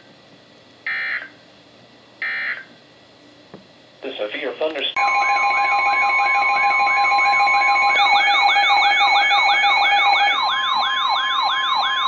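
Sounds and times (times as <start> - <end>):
siren-like falling sweep: 5.0 - 12.0
steady electronic alert tones: 5.0 - 12.0.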